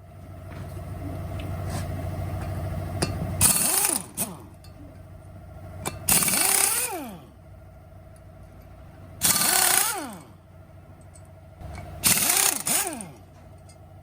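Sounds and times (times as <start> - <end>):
steady machine hum: 0.0 - 14.0
pneumatic wrench spinning: 3.4 - 4.5, 5.8 - 7.2, 9.2 - 10.3, 11.7 - 13.2.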